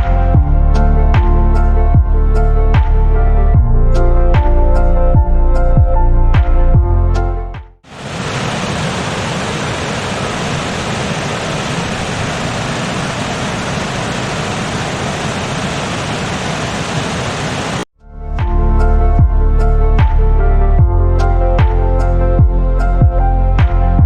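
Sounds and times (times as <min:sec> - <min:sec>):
music: 0:00.0 - 0:07.8, 0:18.0 - 0:24.0
waterfall rushing: 0:07.9 - 0:17.8.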